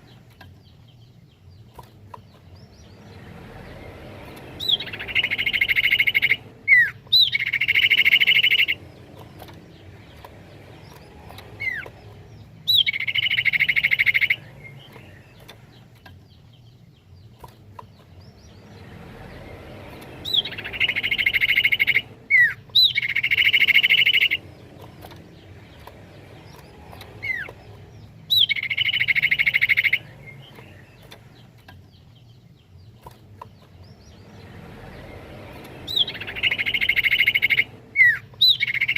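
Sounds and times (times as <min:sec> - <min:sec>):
bird whistles and trills: 0:04.2 - 0:15.5, 0:20.2 - 0:31.2, 0:35.6 - 0:38.9.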